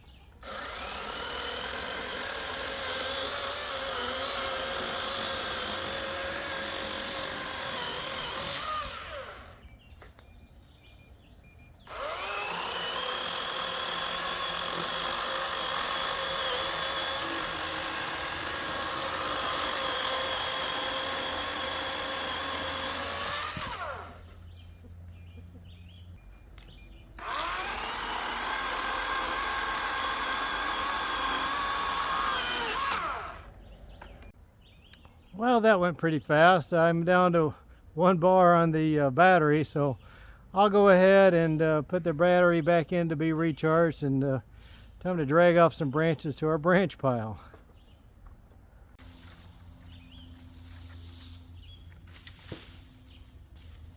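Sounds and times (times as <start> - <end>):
electric chainsaw motor whine: 0.4 - 9.7, 11.8 - 24.5, 27.2 - 33.6.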